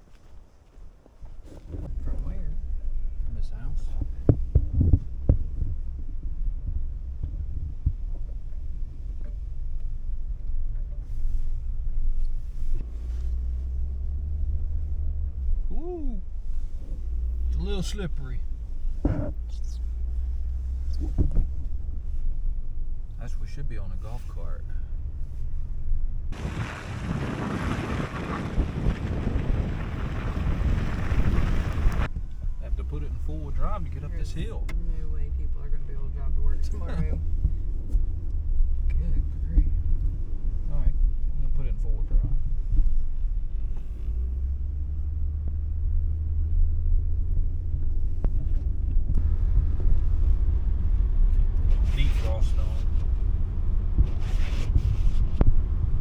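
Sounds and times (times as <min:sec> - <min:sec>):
vehicle engine rumbling: 0:00.0 - 0:56.0
wind buffeting microphone: 0:26.2 - 0:32.6, 0:47.6 - 0:56.0.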